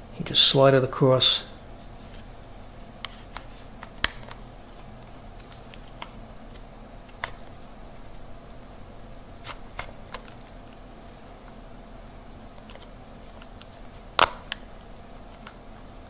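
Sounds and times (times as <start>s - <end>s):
steady low hum: 0.0s - 16.0s
plastic case clips snapping loose: 14.2s - 14.7s.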